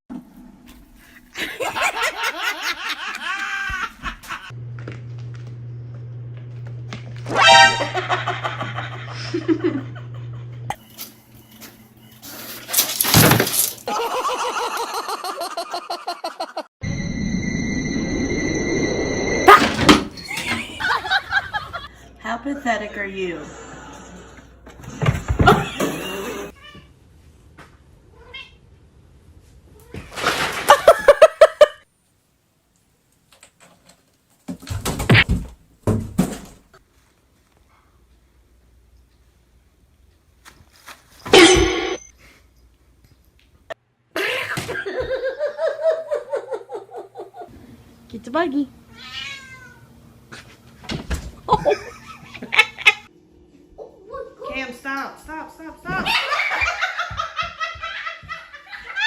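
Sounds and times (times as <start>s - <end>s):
loud crash of something breaking: 30.0s - 30.9s
cat meowing: 48.9s - 49.9s.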